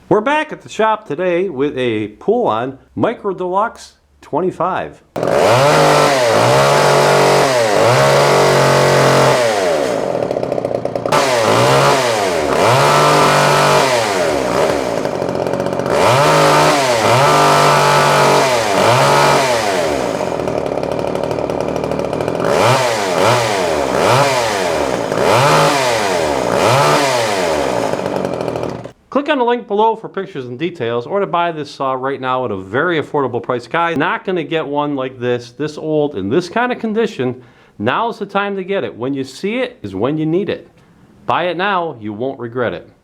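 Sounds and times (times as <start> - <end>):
chainsaw revving: 5.2 - 29.0.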